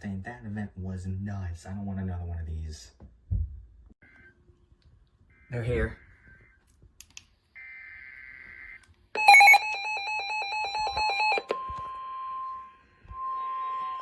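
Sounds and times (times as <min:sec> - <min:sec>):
rapidly pulsing electronic alarm: 0:07.6 - 0:14.0
steady single-pitch alert tone: 0:09.2 - 0:14.0.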